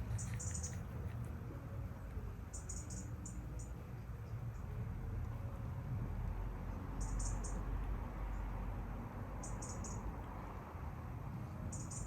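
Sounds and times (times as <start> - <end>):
small animal chirping: 0.0 - 0.8.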